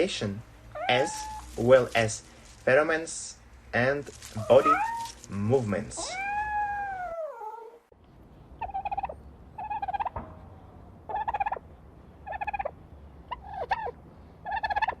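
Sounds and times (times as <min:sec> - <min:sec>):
turkey gobbling: 0:00.8 - 0:01.7, 0:04.4 - 0:05.2, 0:08.6 - 0:10.2, 0:11.1 - 0:11.6, 0:12.2 - 0:15.0.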